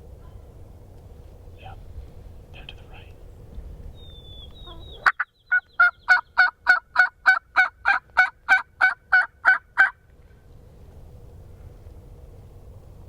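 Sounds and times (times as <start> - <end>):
turkey yelps: 4.0 - 10.0.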